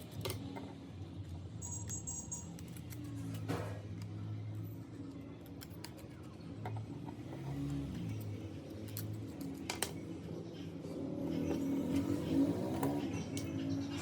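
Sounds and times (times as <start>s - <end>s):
soft background music: 0.0s - 14.0s
small tools clicking and tapping: 5.4s - 10.2s.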